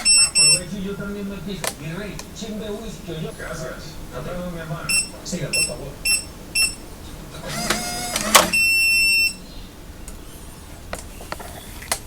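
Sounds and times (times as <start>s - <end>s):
long electronic beep: 0.0s - 0.7s, 4.9s - 6.8s, 8.4s - 9.4s
faint clicks: 0.0s - 12.0s
small motor whirring: 6.0s - 12.0s.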